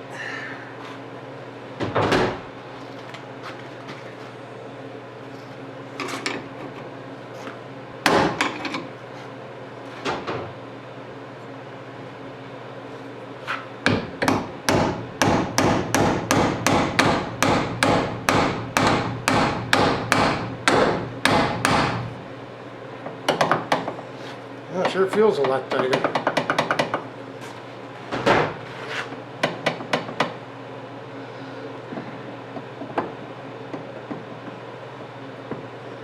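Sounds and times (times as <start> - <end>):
hammer striking hinge pin: 13.9 - 22.0.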